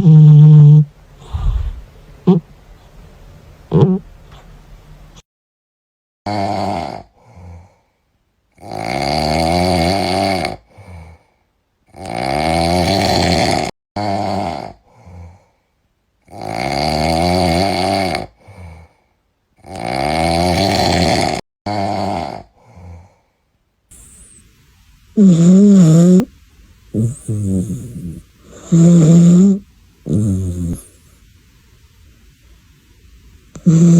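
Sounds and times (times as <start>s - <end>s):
cat snoring: 0.0s - 2.4s, 6.3s - 7.8s, 8.6s - 11.2s, 11.9s - 15.4s, 16.3s - 18.9s, 19.6s - 23.2s, 23.9s - 24.4s, 25.2s - 26.3s, 26.9s - 31.0s, 33.6s - 33.9s.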